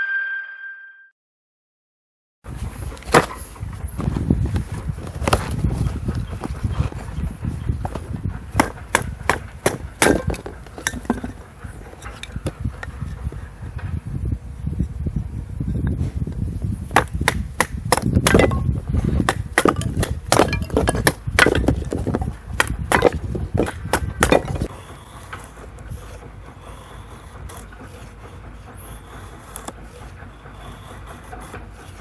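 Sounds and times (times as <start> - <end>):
wood cracking and snapping: 19.3 - 24.7.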